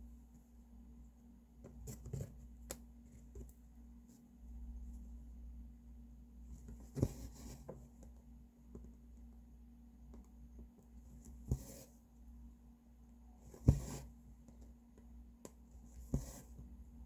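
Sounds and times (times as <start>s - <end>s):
low steady hum: 0.0s - 17.0s
needle tapping through fabric: 10.1s - 11.9s, 13.5s - 16.7s.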